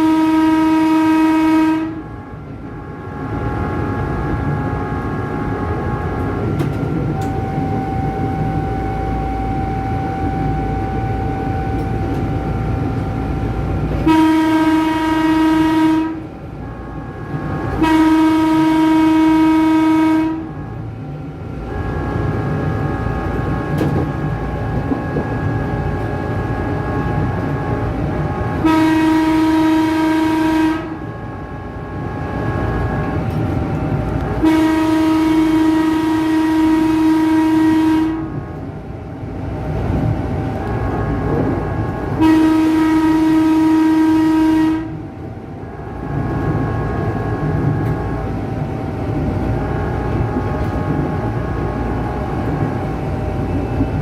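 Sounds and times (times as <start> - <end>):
electric train horn: 0.0 - 20.8, 21.6 - 38.6, 40.5 - 48.8
steady whine: 0.0 - 54.0
train wheel noise: 0.0 - 54.0.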